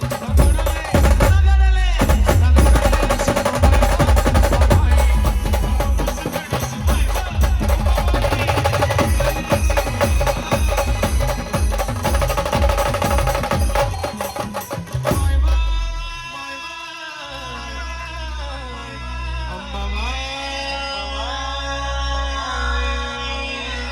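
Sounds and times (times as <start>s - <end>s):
drum strikes and thumps: 0.0s - 16.0s.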